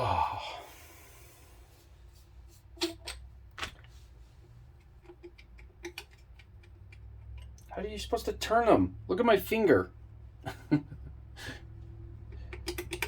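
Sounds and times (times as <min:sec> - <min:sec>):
metal baffles clicking and scraping: 0:04.4 - 0:07.8, 0:12.3 - 0:13.0.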